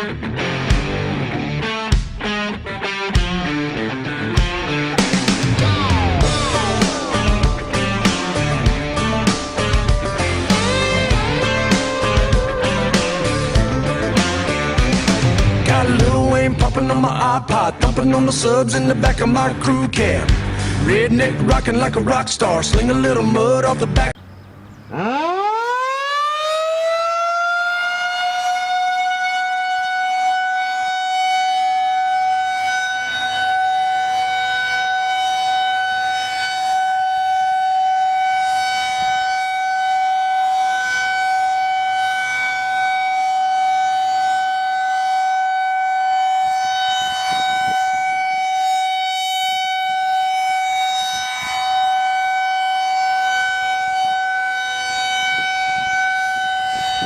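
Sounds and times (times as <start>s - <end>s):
warning siren high tone: 4.7s - 17.6s, 24.2s - 57.0s.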